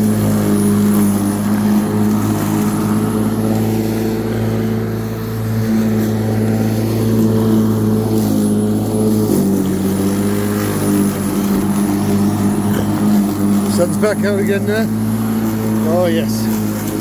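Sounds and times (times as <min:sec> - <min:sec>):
electric lawnmower motor hum: 0:00.0 - 0:17.0.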